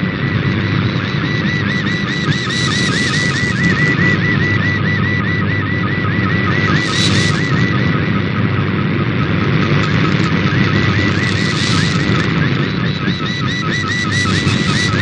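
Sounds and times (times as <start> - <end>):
radio static and interference: 0.0 - 4.5, 6.2 - 15.0
warbling digital radio tone: 1.0 - 4.4, 6.2 - 8.0, 9.3 - 15.0.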